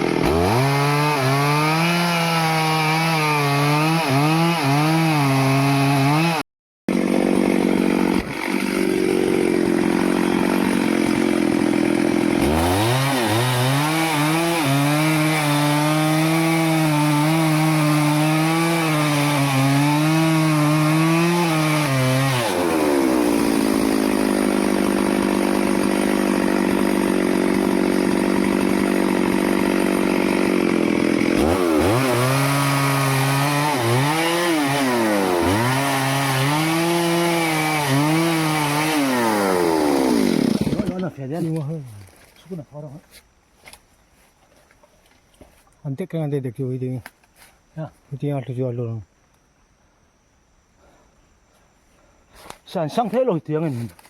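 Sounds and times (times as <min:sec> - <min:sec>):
chainsaw cutting wood: 0:00.0 - 0:42.3.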